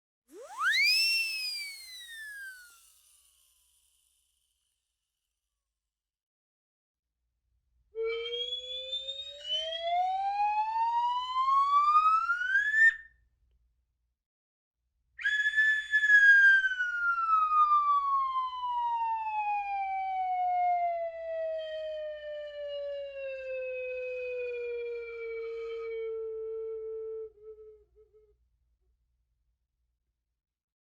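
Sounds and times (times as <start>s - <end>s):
whistle with gliding pitch: 0.3s - 3.9s, 8.0s - 13.1s, 15.2s - 19.8s, 21.4s - 28.2s.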